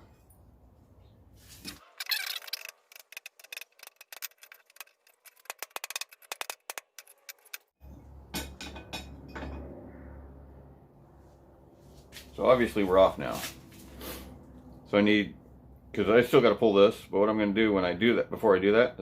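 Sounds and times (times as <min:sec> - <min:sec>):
metal tools tapping on steel: 0:08.3 - 0:09.7.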